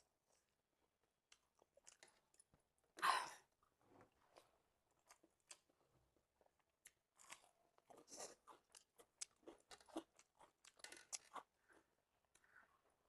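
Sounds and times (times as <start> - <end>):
person chewing food: 1.3 - 2.5, 3.6 - 12.8.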